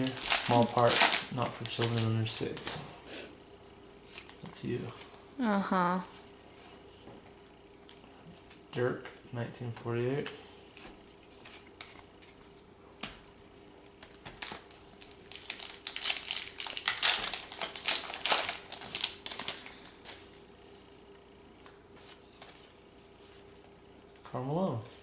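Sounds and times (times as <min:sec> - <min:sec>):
card pack wrapper crinkling: 0:00.0 - 0:02.8, 0:14.3 - 0:20.3
cards clicking and rustling: 0:00.0 - 0:02.8, 0:13.9 - 0:20.3.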